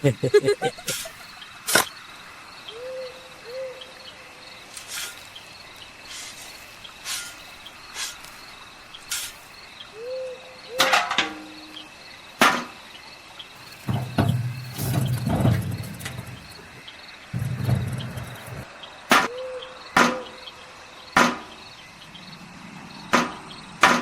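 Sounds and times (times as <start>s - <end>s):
crickets chirping: 0.0s - 23.9s
owl-like hoot: 2.7s - 3.9s, 9.9s - 10.9s, 19.3s - 19.8s
sharp clicks and knocks: 13.6s - 16.8s.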